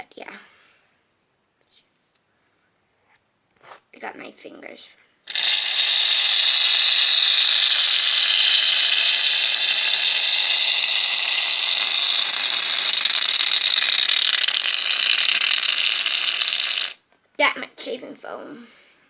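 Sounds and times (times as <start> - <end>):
aerosol can spraying hiss: 11.3 - 15.7.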